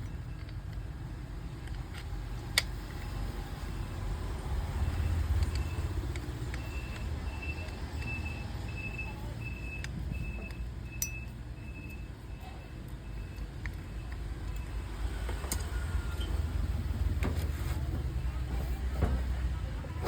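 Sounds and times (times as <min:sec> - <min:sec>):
vehicle engine rumble: 0:00.0 - 0:20.0
reversing alarm beeps: 0:04.8 - 0:14.9.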